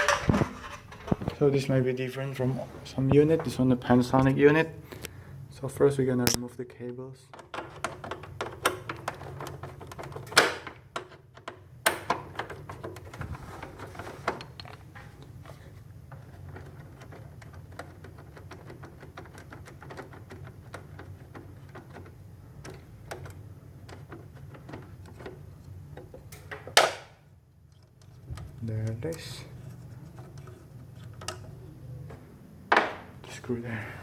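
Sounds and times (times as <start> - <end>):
sharp knocks: 32.7 - 33.1.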